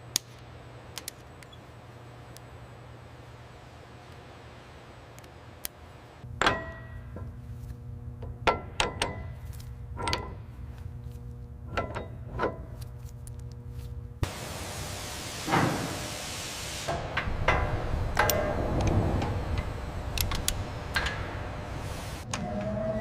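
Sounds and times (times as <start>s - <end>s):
low workshop hum: 0.0s - 23.0s
heavy metal parts clanking: 6.3s - 7.5s, 8.2s - 10.6s, 11.6s - 12.8s, 16.9s - 21.8s.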